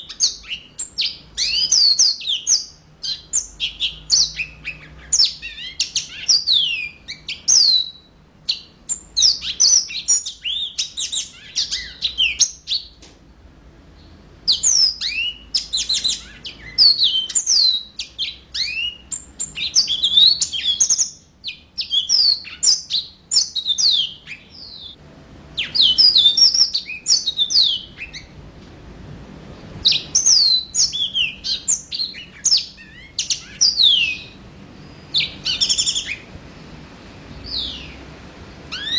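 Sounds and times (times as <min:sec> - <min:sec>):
canary singing high chirps: 0:00.0 - 0:13.1, 0:13.9 - 0:28.4, 0:29.8 - 0:36.4, 0:37.3 - 0:38.9.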